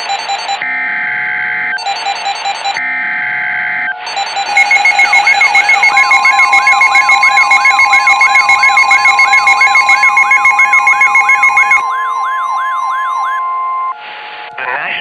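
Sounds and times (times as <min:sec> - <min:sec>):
steady alarm tone: 0:01.8 - 0:02.8, 0:04.1 - 0:13.8
fast-pulsing beeps: 0:04.1 - 0:12.3
sweeping siren wail: 0:04.1 - 0:13.6.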